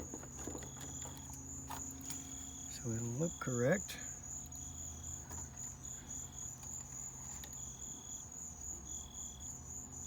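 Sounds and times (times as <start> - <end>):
crickets chirping: 0.0 - 10.0
lower insect trill: 0.0 - 10.0.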